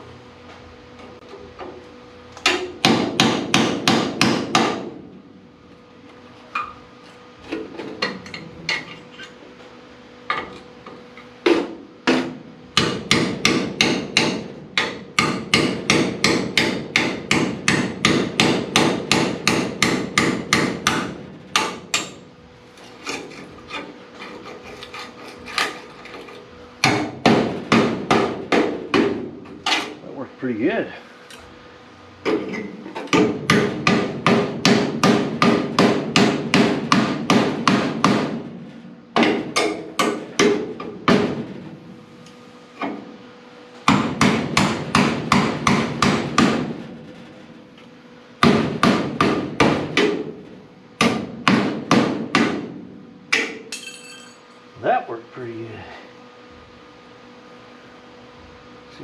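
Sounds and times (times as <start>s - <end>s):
hammer striking metal: 11.5s - 22.2s, 53.3s - 54.4s.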